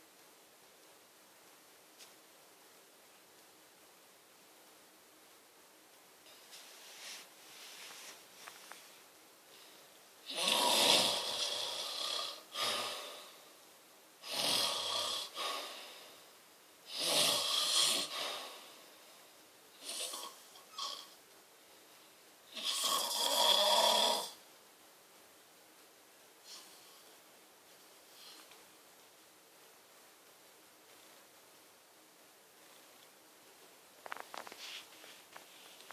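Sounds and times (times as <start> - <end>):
person snoring loudly: 10.2 - 13.4, 14.2 - 16.1, 16.9 - 18.8, 19.8 - 21.2, 22.5 - 24.4.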